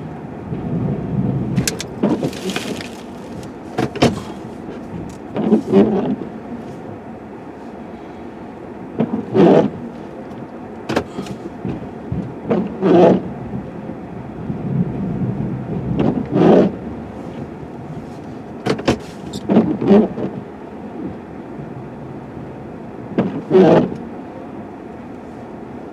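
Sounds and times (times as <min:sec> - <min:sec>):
plow clunking into packed snow: 0:01.6 - 0:05.7.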